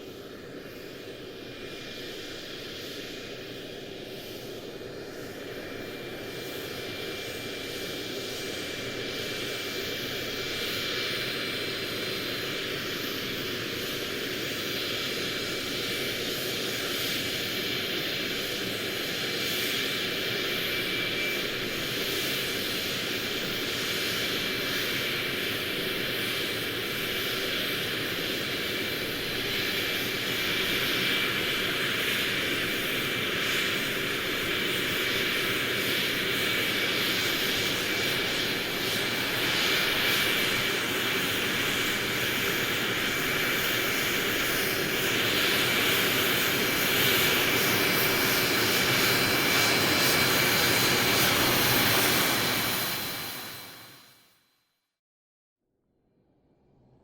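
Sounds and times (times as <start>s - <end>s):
airplane engine rush: 0.0s - 54.2s, 56.0s - 57.0s
high engine whine: 28.8s - 54.1s.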